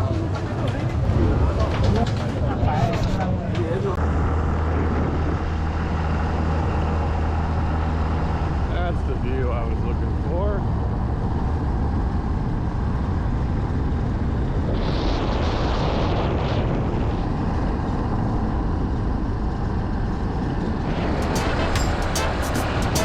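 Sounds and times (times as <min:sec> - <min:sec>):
boat engine droning: 0:00.0 - 0:13.4, 0:19.8 - 0:23.0.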